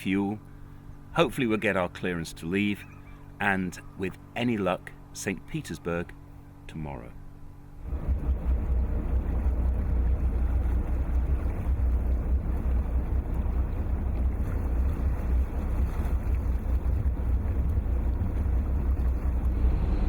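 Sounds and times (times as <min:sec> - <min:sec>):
boat engine drone: 0:00.0 - 0:20.0
rushing water: 0:07.8 - 0:20.0
rushing wind: 0:07.8 - 0:20.0.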